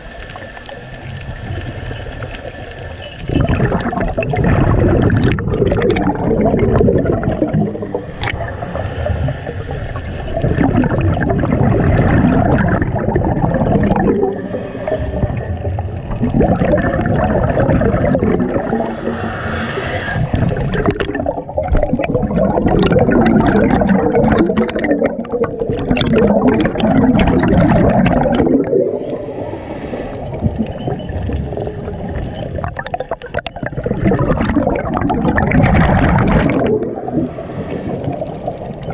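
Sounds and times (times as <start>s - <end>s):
underwater exhaust bubbles gurgling: 0.0s - 38.9s
diver inhaling through regulator: 7.7s - 11.0s, 12.7s - 16.1s, 17.6s - 21.4s, 28.4s - 32.3s, 36.7s - 38.8s.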